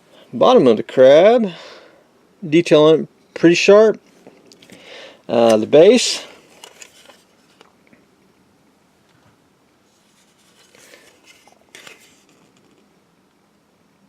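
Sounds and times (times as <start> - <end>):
plastic parts rustling and clicking: 6.4 - 7.7, 10.0 - 12.9.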